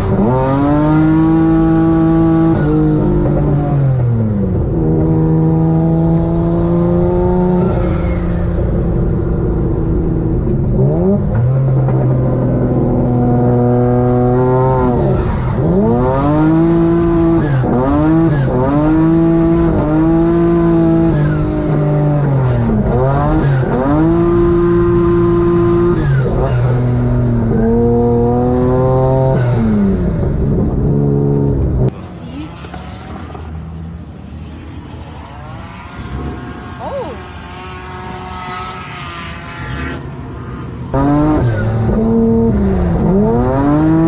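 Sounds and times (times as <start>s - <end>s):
car engine revving hard: 0.0s - 31.9s, 40.9s - 44.0s.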